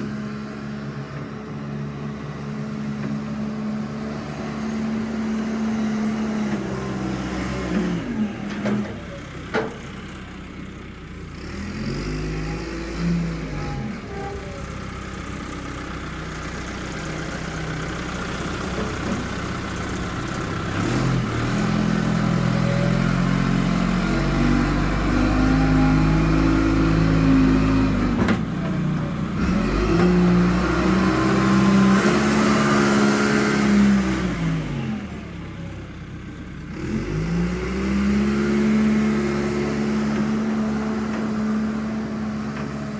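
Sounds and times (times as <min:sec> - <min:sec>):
backhoe engine revving: 0:00.0 - 0:42.9.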